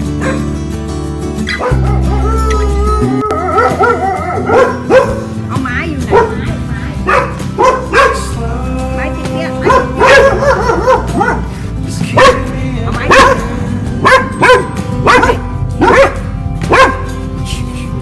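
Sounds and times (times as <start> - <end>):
background music: 0.0 - 18.0
dog barking: 0.2 - 0.6, 1.5 - 2.3, 3.4 - 5.4, 6.1 - 8.3, 9.6 - 17.2.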